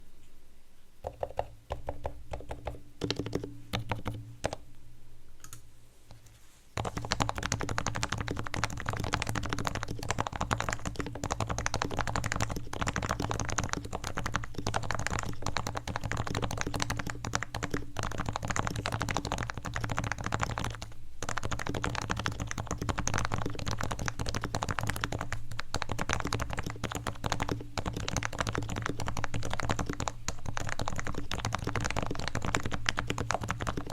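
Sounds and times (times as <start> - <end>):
typing on keyboard: 1.0 - 4.6, 6.8 - 33.9.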